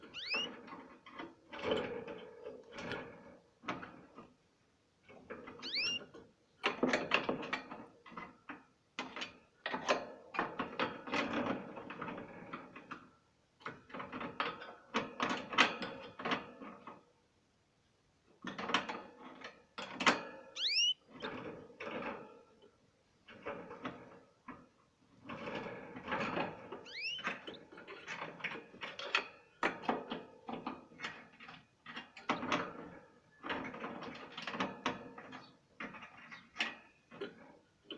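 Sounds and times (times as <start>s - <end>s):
bird chirps: 0.0s - 0.6s, 5.6s - 6.1s, 20.6s - 21.3s, 26.8s - 27.6s.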